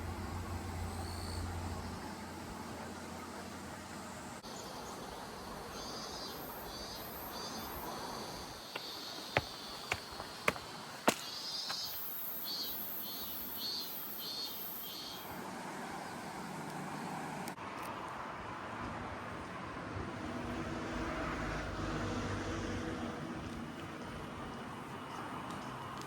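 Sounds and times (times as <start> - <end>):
steady background hiss: 0.0 - 16.6
insects chirping: 0.6 - 2.0, 4.4 - 15.4.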